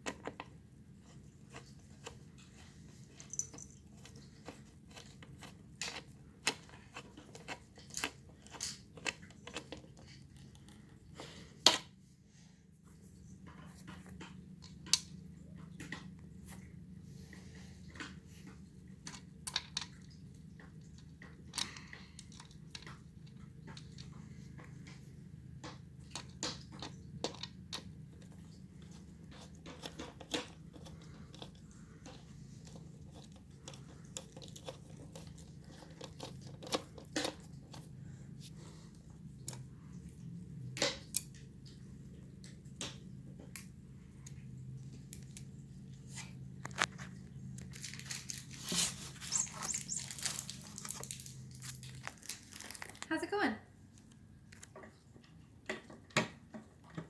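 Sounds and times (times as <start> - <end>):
crinkling or rustling: 12.3 - 57.0.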